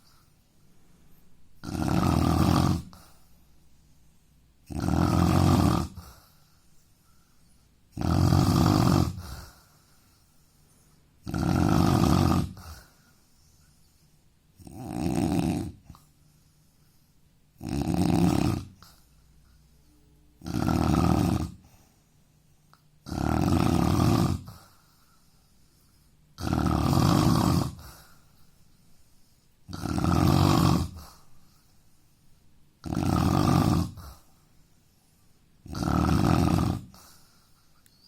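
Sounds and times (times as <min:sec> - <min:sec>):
man snoring loudly: 0:01.6 - 0:03.0, 0:04.7 - 0:06.0, 0:08.0 - 0:09.4, 0:11.2 - 0:12.7, 0:14.6 - 0:15.8, 0:17.6 - 0:18.8, 0:20.4 - 0:21.6, 0:23.1 - 0:24.5, 0:26.4 - 0:27.8, 0:29.7 - 0:31.0, 0:32.8 - 0:34.1, 0:35.6 - 0:37.0.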